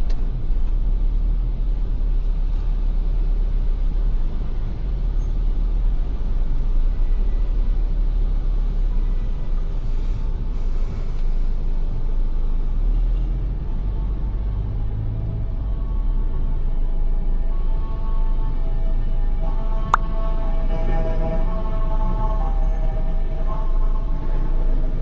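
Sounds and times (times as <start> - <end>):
car engine rumble: 0.0 - 25.0
road noise inside cabin: 0.0 - 25.0.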